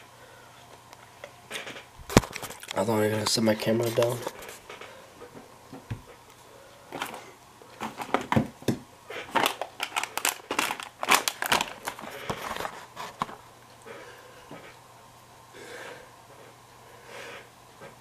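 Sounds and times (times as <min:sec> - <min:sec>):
handling clicks and crinkles: 0:00.8 - 0:04.9, 0:06.3 - 0:08.5, 0:09.2 - 0:13.4.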